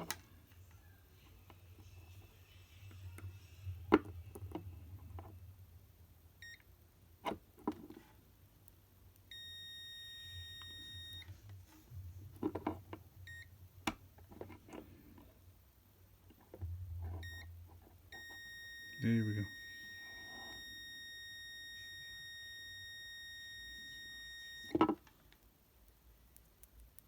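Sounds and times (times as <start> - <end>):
multimeter beeping: 9.3 - 11.3, 13.3 - 13.5, 17.1 - 24.8
test probes tapping and clicking: 16.3 - 20.0.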